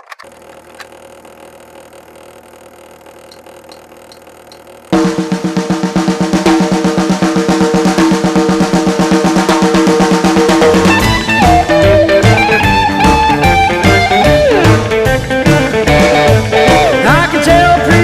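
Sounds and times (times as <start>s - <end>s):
fast driving drums: 4.9s - 18.0s
rock and roll band playing: 5.0s - 18.0s.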